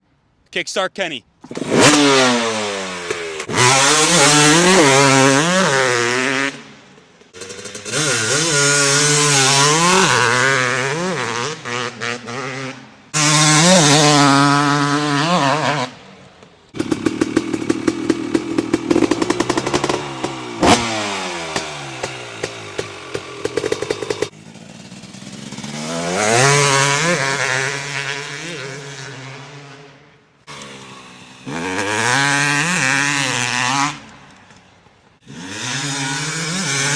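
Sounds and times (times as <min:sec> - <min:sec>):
two-stroke motocross engine revving: 0:01.4 - 0:16.1, 0:16.7 - 0:36.9
engine idling with rapid popping: 0:16.7 - 0:25.8.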